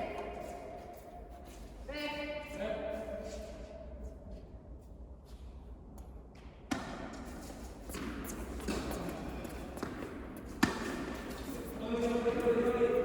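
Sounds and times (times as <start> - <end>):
indoor court hum: 0.0 - 13.0
tennis ball struck: 10.6 - 11.0.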